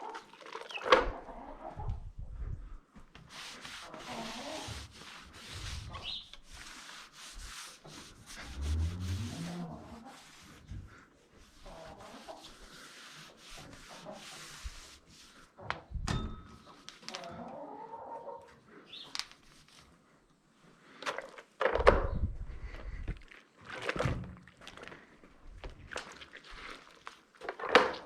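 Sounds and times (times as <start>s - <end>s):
scrubbing on a pipe: 3.1s - 15.6s, 25.7s - 28.0s.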